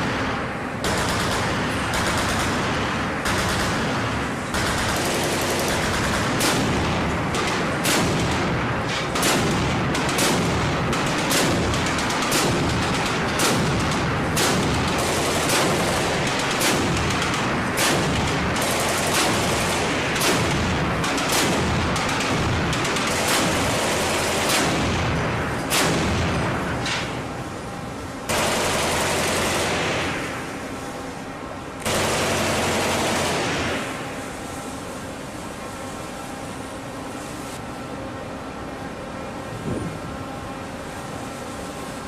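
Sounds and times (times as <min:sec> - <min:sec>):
chain gun firing with echo: 0:00.8 - 0:27.1.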